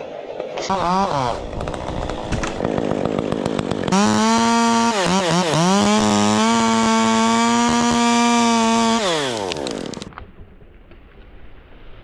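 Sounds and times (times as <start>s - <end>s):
chainsaw at full throttle: 0.6s - 10.1s.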